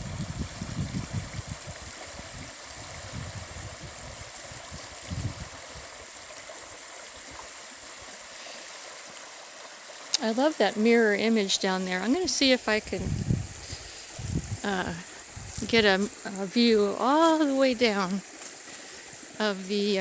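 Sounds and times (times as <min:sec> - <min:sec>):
creek water bubbling over rocks: 0:00.0 - 0:20.0.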